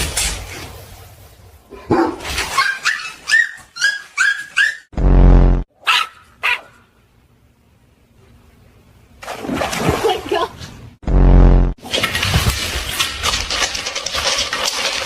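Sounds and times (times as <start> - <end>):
small dog yapping: 2.0 - 4.9, 5.8 - 6.8.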